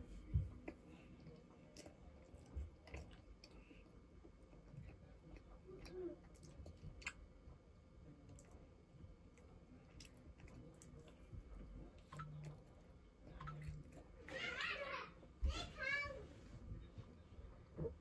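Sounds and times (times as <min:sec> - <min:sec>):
faint chewing: 0:00.0 - 0:14.3.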